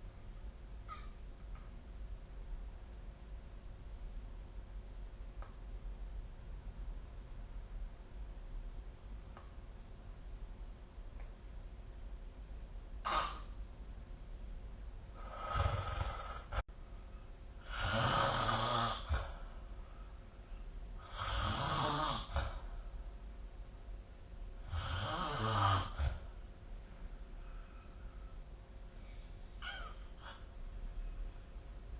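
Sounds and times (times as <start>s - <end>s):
person snoring: 15.2s - 16.6s, 17.6s - 19.5s, 21.0s - 22.7s, 24.6s - 26.3s.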